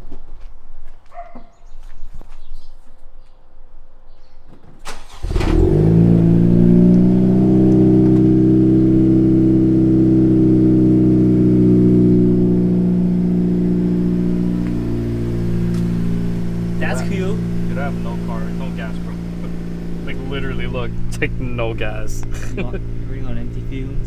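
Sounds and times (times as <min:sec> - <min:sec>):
car engine cranking: 0:04.8 - 0:24.0
car engine idling: 0:04.8 - 0:24.0.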